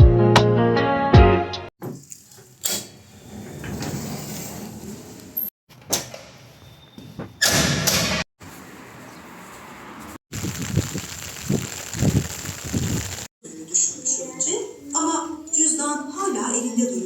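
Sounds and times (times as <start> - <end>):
sliding scrape: 2.1 - 5.4.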